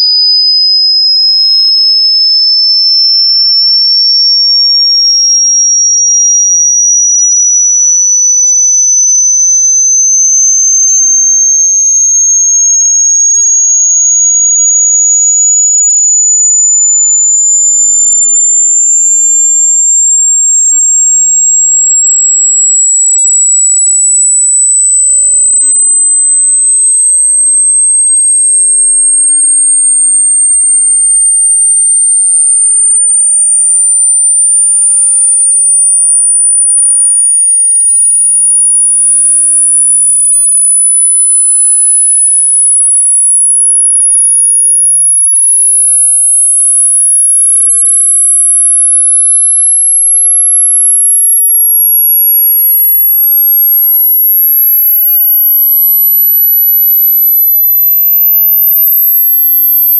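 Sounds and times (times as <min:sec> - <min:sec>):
rising high-pitched electronic tone: 0:28.7 - 0:37.4, 0:54.9 - 0:59.9.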